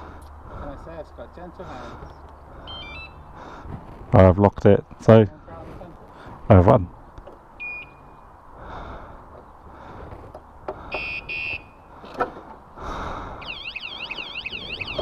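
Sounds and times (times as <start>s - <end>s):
alarm beeps: 2.6s - 3.3s, 7.6s - 8.2s, 10.9s - 11.8s, 13.4s - 15.0s
fast warbling siren: 13.4s - 15.0s.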